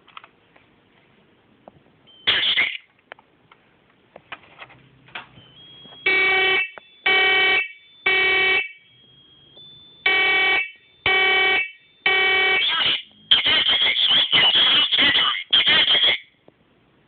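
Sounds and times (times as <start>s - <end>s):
smoke alarm beeps: 2.1s - 2.7s, 5.3s - 12.6s.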